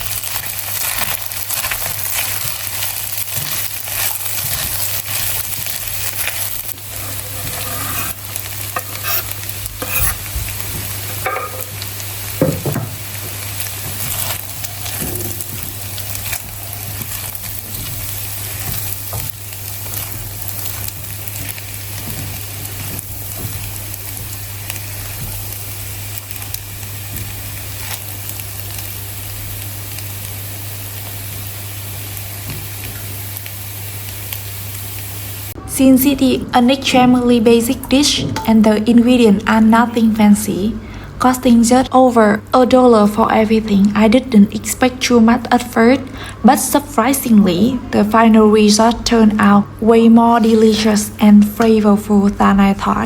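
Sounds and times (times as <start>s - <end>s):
rice sizzling in a pan: 0.0s - 35.6s, 37.5s - 53.0s
steady low hum: 0.8s - 53.0s
utensil scraping a pan: 2.2s - 11.9s.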